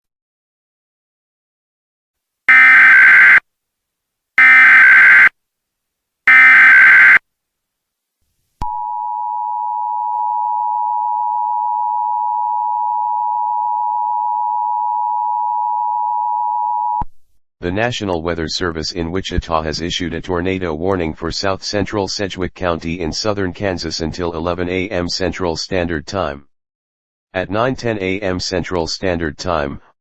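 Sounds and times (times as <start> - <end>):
data tone bursts: 2.5 - 3.4, 4.4 - 5.3, 6.3 - 7.2
steady two-tone attention signal: 2.5 - 3.4, 4.4 - 5.3, 6.3 - 7.2.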